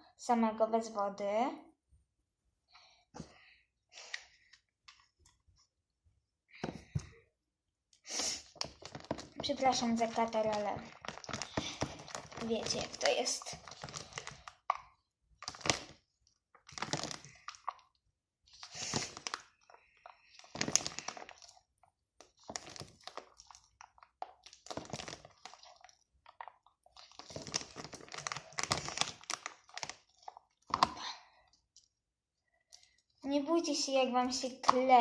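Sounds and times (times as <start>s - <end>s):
slime crackling and squelching: 8.1s - 32.0s.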